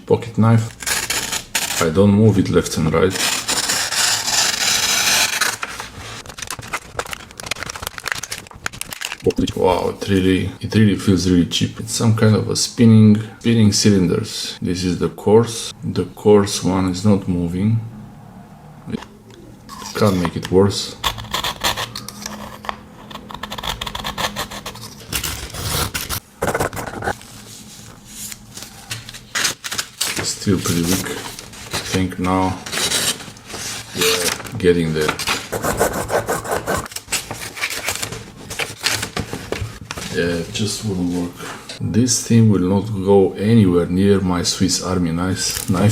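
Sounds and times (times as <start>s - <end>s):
knife scraping on sharpener: 21.0s - 26.2s.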